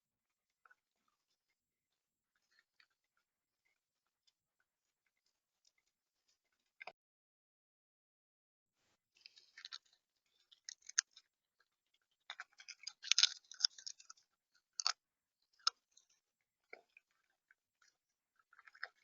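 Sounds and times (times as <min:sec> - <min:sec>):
crunching and sharp clicks: 0:09.2 - 0:11.3, 0:11.9 - 0:19.0.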